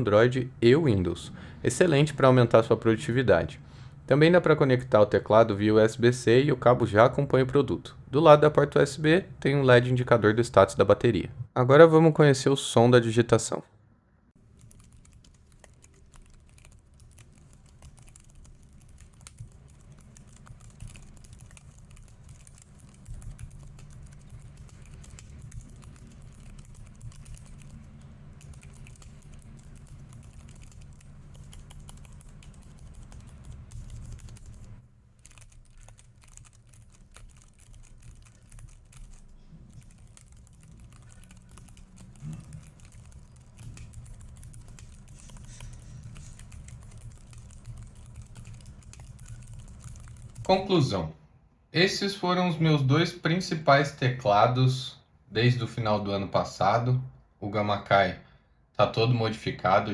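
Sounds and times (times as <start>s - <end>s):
keyboard typing: 14.4s - 50.6s.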